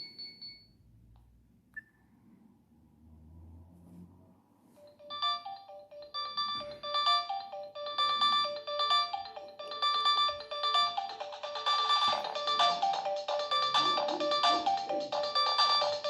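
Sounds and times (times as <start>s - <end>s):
mobile phone polyphonic ringtone: 4.8s - 16.0s.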